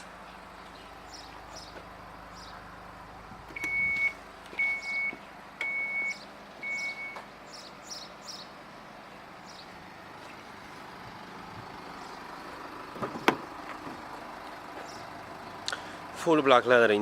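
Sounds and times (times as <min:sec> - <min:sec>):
electronic warning beeps: 0:03.6 - 0:07.2.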